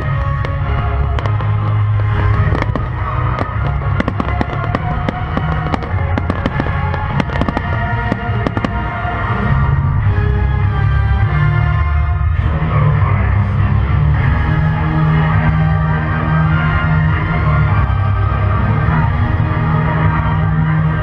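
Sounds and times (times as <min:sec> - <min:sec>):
firework shells bursting: 0:00.0 - 0:09.3
fireworks crackling: 0:00.0 - 0:09.4
music: 0:00.0 - 0:21.0.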